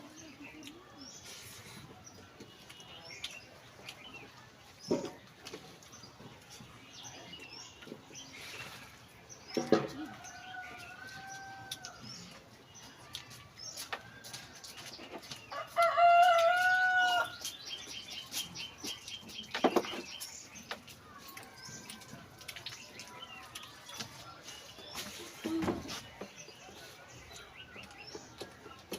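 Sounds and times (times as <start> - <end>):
rooster crowing: 15.5 - 17.4.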